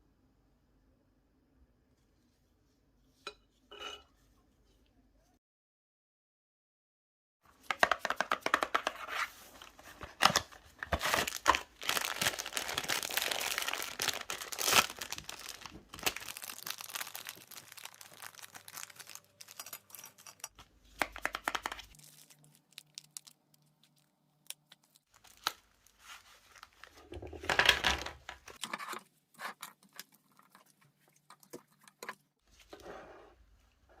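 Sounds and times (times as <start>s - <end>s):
food wrapper crinkling and tearing: 10.0s - 28.6s.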